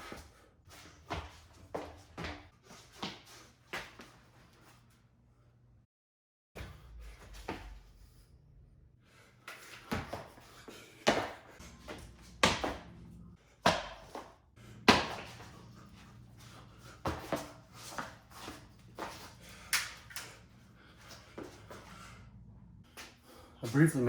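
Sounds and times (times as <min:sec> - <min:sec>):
butterfly knives knocking and slapping: 0:19.7 - 0:20.4.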